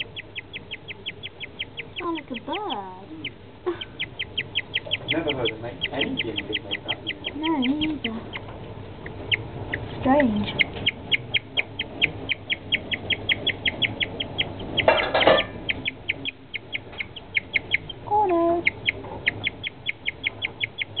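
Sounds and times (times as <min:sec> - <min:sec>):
guinea pig chirping: 0:00.0 - 0:21.0.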